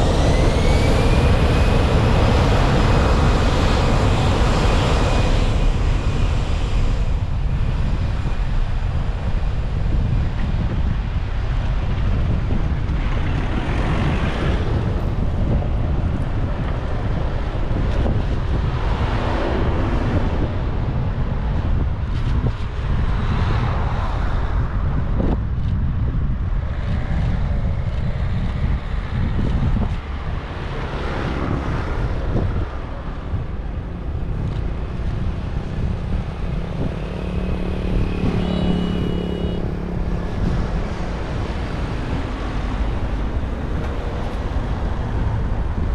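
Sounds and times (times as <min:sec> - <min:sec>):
high-pitched engine-like tone: 0:00.0 - 0:08.3, 0:33.8 - 0:45.9
deep steady rumble: 0:00.0 - 0:22.1, 0:31.4 - 0:45.9
wind buffeting microphone: 0:00.0 - 0:45.9.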